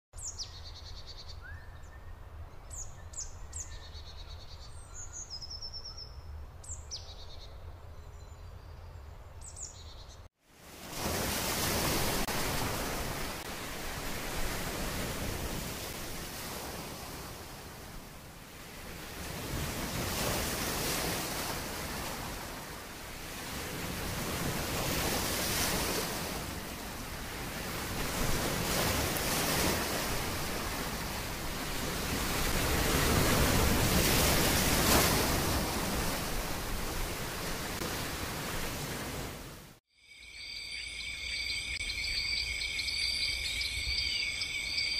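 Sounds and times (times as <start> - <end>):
songbirds chirping: 40.2 - 44.9.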